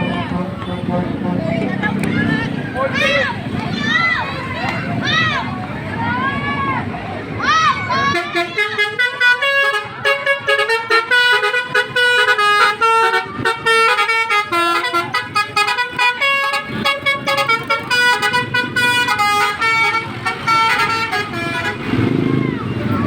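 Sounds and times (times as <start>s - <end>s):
musical bus horn melody: 0.0s - 1.6s, 8.1s - 22.3s.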